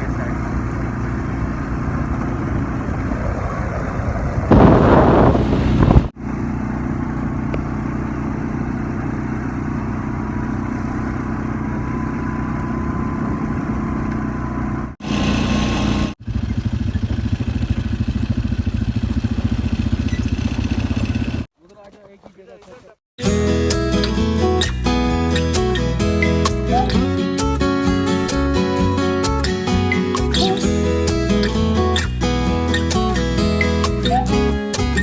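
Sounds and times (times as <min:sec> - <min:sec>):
vehicle engine running: 0:00.0 - 0:21.5
loud rushing noise: 0:03.2 - 0:06.1.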